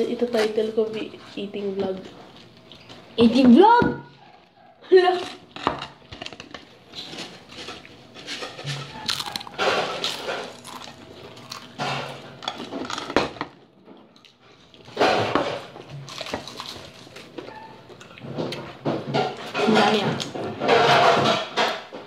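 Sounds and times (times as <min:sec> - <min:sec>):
crisps crunching while eaten: 0:05.1 - 0:13.4, 0:14.1 - 0:18.2.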